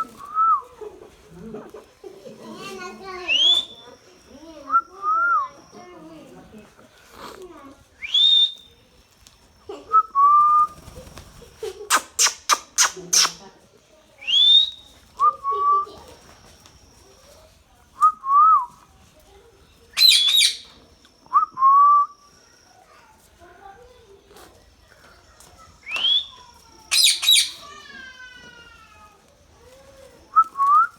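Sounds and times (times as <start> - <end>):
parrot screeching: 20.0 - 20.7, 26.9 - 28.1
parrot squawk: 20.0 - 20.7, 26.9 - 27.8
parrot whistling: 20.0 - 20.7, 25.9 - 27.7.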